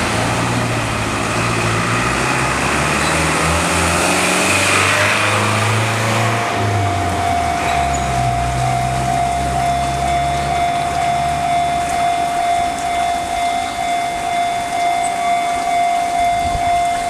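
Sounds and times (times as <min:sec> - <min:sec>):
cars driving past: 0:00.0 - 0:17.0
steady high tone: 0:05.6 - 0:17.0.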